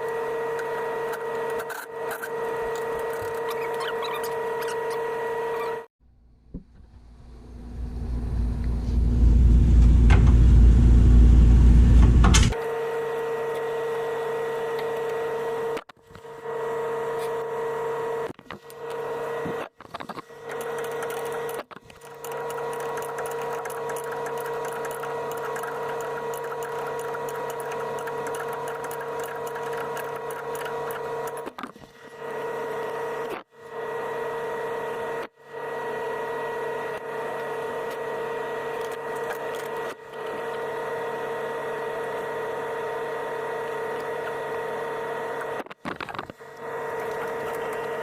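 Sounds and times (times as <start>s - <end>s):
machine hum: 0.0s - 48.0s
loud low rumble: 6.2s - 12.5s.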